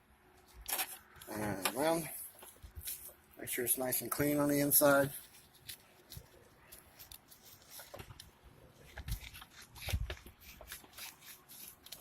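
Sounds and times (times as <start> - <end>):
sandpaper scratching metal: 10.4 - 12.0.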